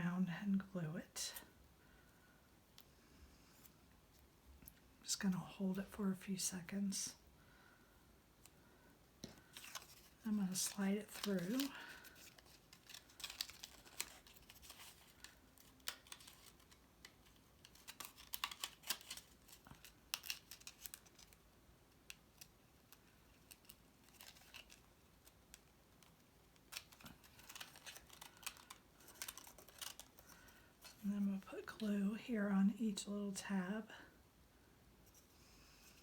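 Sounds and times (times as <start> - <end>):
cardstock rustling and tapping: 9.2 - 21.3.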